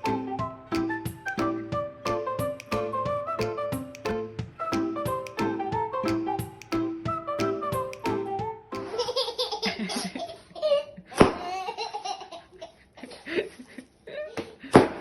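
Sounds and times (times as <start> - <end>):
child laughing heartily: 8.8 - 14.0.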